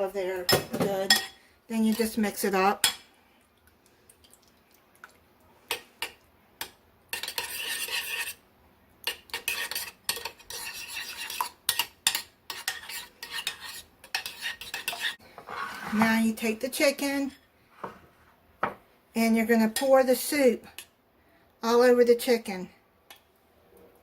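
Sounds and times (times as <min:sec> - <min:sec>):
utensil stirring in a bowl: 0:03.8 - 0:08.4, 0:09.0 - 0:16.2.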